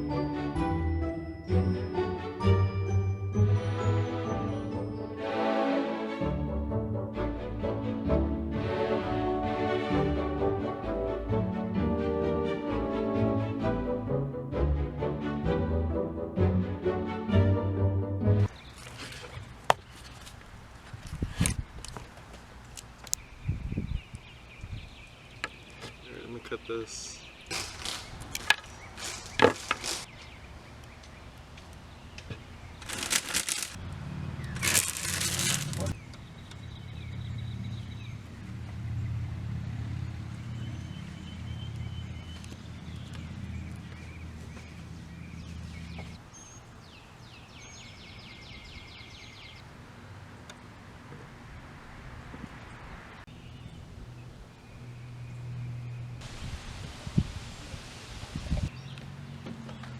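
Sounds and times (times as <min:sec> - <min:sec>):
birds chirping: 0:22.4 - 0:39.3
rasping scrape: 0:27.5 - 0:30.1.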